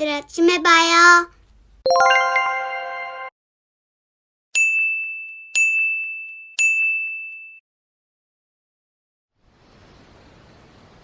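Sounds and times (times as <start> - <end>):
multi-note chime: 1.9 - 3.3
high dings: 4.6 - 7.6.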